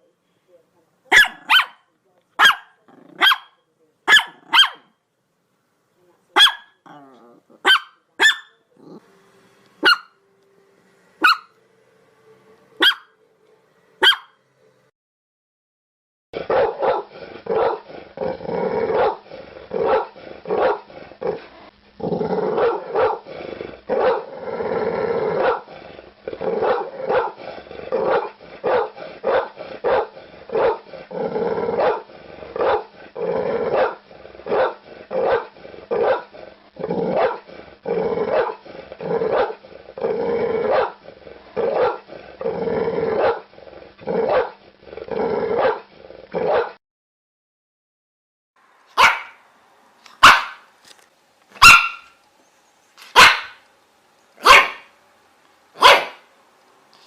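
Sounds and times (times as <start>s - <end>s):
dog barking: 1.1s - 4.9s, 6.4s - 6.9s, 7.6s - 8.6s, 9.8s - 10.2s, 11.2s - 11.5s, 12.8s - 13.1s, 14.0s - 14.4s, 16.4s - 17.9s, 19.0s - 19.2s, 19.8s - 20.9s, 22.6s - 23.2s, 24.0s - 24.3s, 25.4s - 25.7s, 26.6s - 27.4s, 28.0s - 30.8s, 31.8s - 32.0s, 32.6s - 32.9s, 33.7s - 36.3s, 37.1s - 37.4s, 38.3s - 38.6s, 39.3s - 39.6s, 40.7s - 41.0s, 41.7s - 42.0s, 43.2s - 43.4s, 44.3s - 44.6s, 45.6s - 45.8s, 46.4s - 46.8s, 49.0s - 49.4s, 50.2s - 50.7s, 51.6s - 52.2s, 53.1s - 53.6s, 54.4s - 54.9s, 55.8s - 56.3s.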